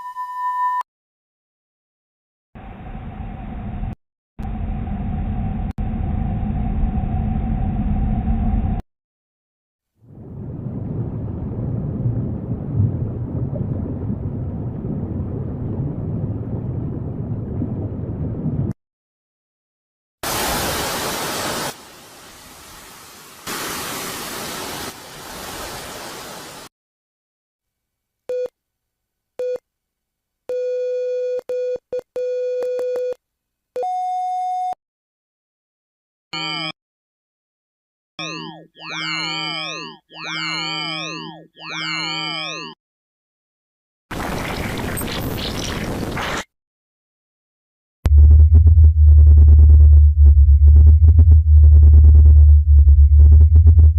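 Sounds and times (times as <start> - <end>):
deep steady rumbling: 2.8 - 8.8, 10.1 - 18.7, 48.1 - 53.9
higher electronic tone: 48.1 - 53.9.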